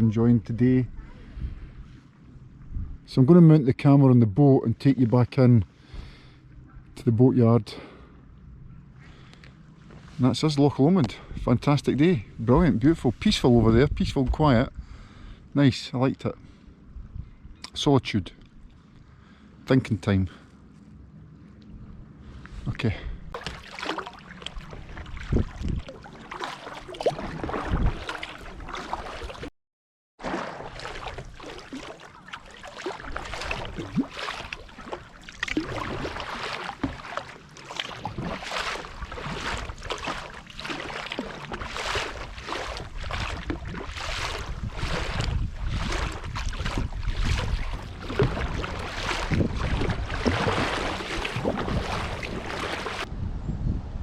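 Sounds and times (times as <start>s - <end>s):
wind rumble on microphone: 0.0s - 3.2s, 11.0s - 15.3s, 16.8s - 17.6s, 24.4s - 26.2s, 26.8s - 28.7s, 33.0s - 37.2s, 37.9s - 54.0s
kayak paddle strokes in water: 23.3s - 29.5s, 30.2s - 53.1s.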